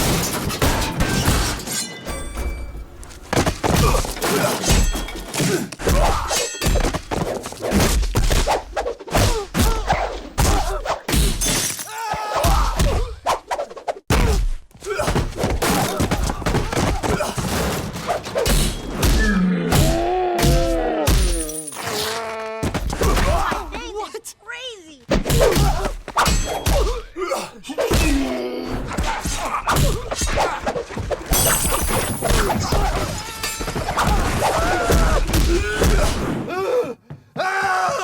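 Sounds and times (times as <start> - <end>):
fight thuds and whacks: 3.3 - 21.5, 22.6 - 23.9, 25.1 - 27.1, 27.8 - 36.4.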